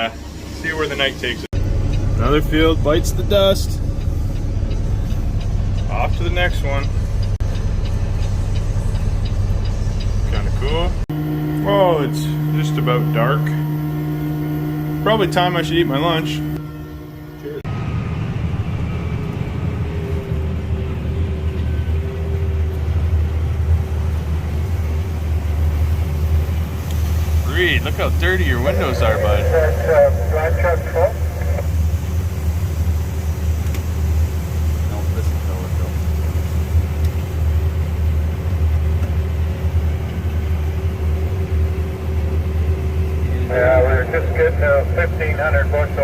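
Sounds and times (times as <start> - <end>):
low engine rumble: 0.0 - 46.0
faint steady whine: 11.1 - 17.6, 27.0 - 35.7.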